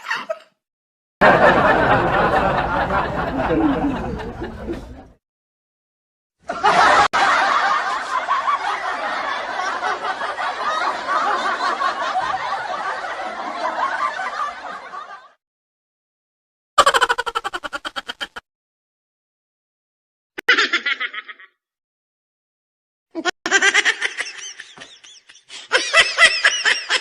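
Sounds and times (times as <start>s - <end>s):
laughter: 1.2s - 5.2s, 6.4s - 15.4s, 16.8s - 18.4s, 20.4s - 21.6s, 23.2s - 27.0s.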